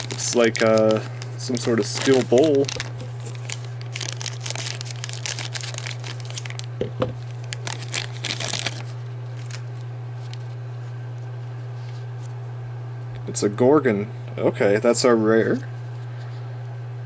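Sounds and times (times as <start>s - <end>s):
packaging crinkling and tearing: 0.0s - 10.6s
low electrical hum: 0.0s - 17.0s.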